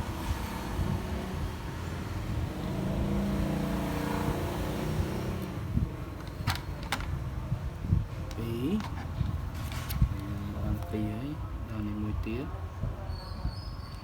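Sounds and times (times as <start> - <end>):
vehicle engine rumbling past: 0.0 - 6.2.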